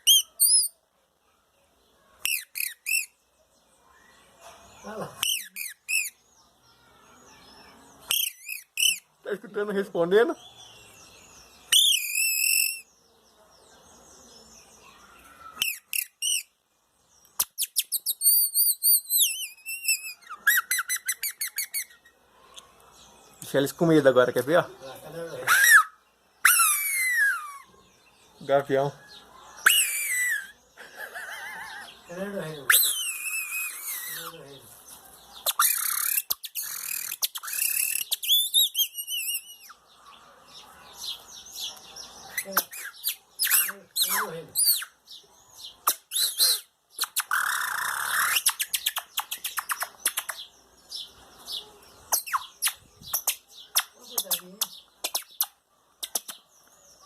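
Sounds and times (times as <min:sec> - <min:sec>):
whistled bird call imitation: 0:00.0 - 0:00.8, 0:02.2 - 0:03.2, 0:05.2 - 0:06.2, 0:08.1 - 0:09.1, 0:11.7 - 0:12.9, 0:15.4 - 0:16.5, 0:17.4 - 0:22.1, 0:25.4 - 0:27.7, 0:29.6 - 0:30.6, 0:32.7 - 0:34.3, 0:35.4 - 0:39.8, 0:42.3 - 0:45.0, 0:45.8 - 0:50.5, 0:52.1 - 0:56.4
faint bird chirping: 0:00.0 - 0:57.0.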